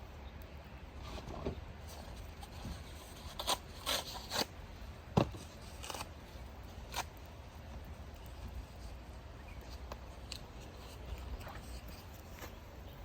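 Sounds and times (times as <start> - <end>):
wood fire crackling: 6.1 - 11.4.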